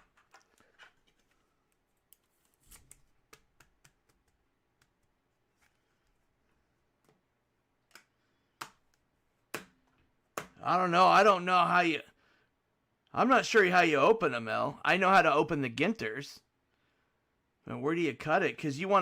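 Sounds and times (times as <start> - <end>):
trading cards clicking and tapping: 2.8 - 5.1.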